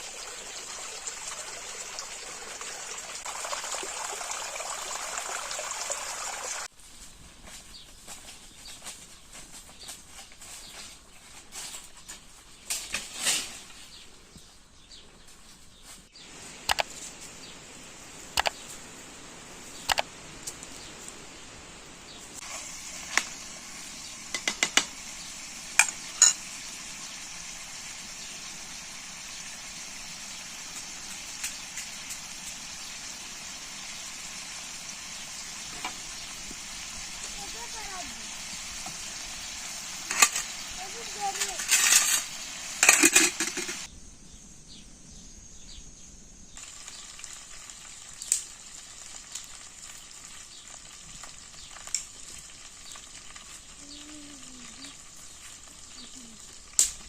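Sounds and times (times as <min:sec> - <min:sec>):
food sizzling in a pan: 0:00.0 - 0:06.7, 0:16.1 - 0:43.9, 0:46.6 - 0:57.0
pots and utensils clinking: 0:24.3 - 0:25.0, 0:25.7 - 0:26.6, 0:39.9 - 0:43.9.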